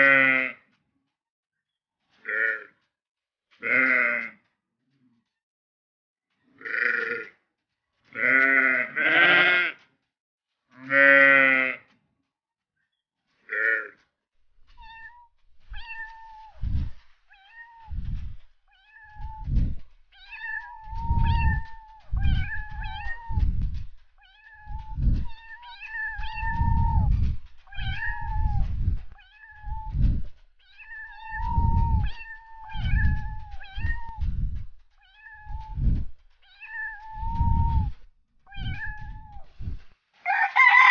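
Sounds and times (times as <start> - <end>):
cats meowing: 14.6 - 39.8
low thumps: 14.7 - 39.9.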